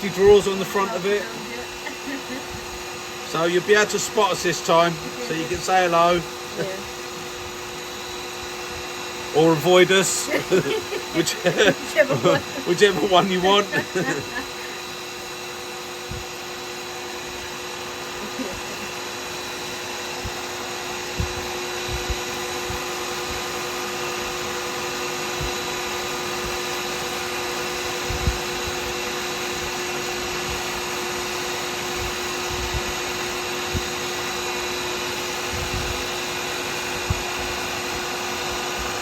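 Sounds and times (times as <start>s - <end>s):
wood lathe motor humming: 0.0s - 27.5s.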